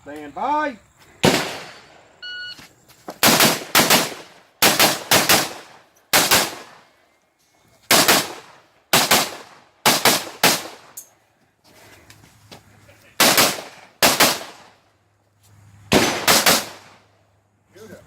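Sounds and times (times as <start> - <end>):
rifle shots: 1.2 - 1.9, 3.2 - 6.8, 7.9 - 11.0, 13.2 - 14.8, 15.9 - 17.1.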